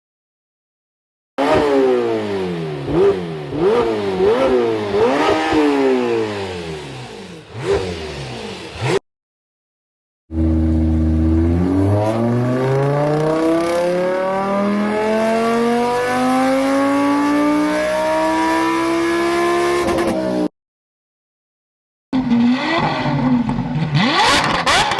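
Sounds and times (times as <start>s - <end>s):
car engine accelerating: 10.3s - 20.5s, 22.2s - 24.9s.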